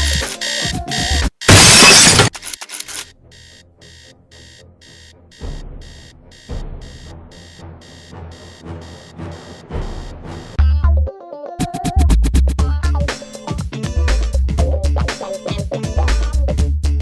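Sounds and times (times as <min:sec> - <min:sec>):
alarm clock beeping: 0:00.0 - 0:10.6.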